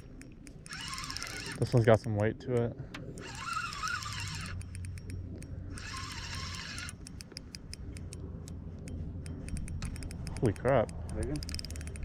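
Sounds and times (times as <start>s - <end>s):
fishing reel whirring: 0.0s - 1.8s, 3.1s - 5.1s, 5.7s - 7.7s, 11.3s - 12.0s.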